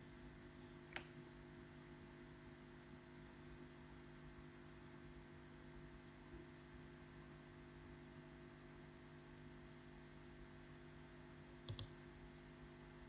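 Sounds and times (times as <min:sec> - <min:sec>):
low electrical hum: 0:00.0 - 0:13.0
computer mouse clicks: 0:11.6 - 0:12.0.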